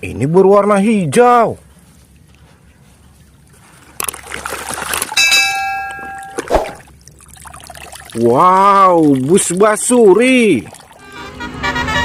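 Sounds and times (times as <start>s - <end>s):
rustling and splashing: 1.6s - 11.1s
bright bell-like chime: 5.2s - 6.4s.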